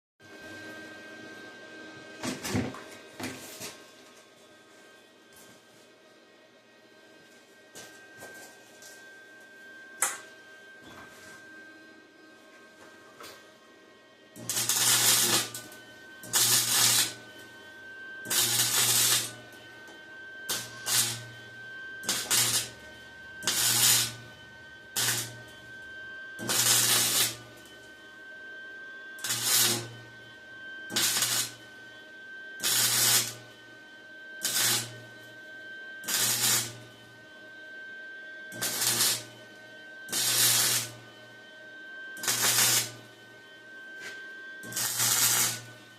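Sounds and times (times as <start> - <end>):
arc welding crackling: 14.4 - 17.2, 18.3 - 19.4, 20.5 - 21.3, 22.0 - 22.8, 23.4 - 24.3, 24.9 - 25.6, 26.4 - 27.4, 29.2 - 30.0, 30.9 - 31.6, 32.6 - 33.4, 34.4 - 35.0, 36.0 - 36.8, 38.6 - 39.3, 40.1 - 41.0, 42.2 - 43.0, 44.6 - 45.8.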